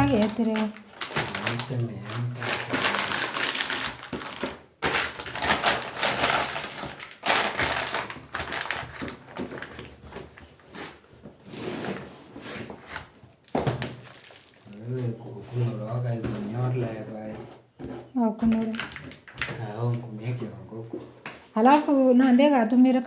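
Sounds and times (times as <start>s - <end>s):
plastic sheeting rustling and crackling: 0.0s - 14.8s.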